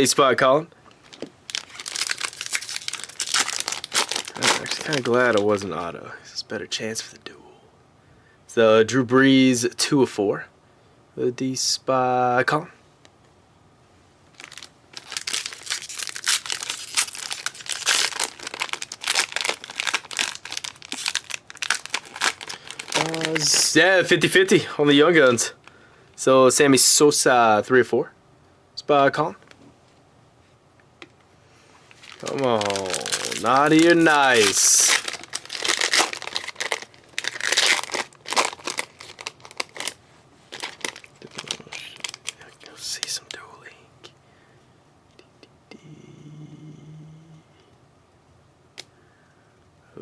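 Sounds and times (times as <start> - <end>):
wrapper crinkling and tearing: 1.0 - 5.8, 14.3 - 24.1, 31.9 - 43.4.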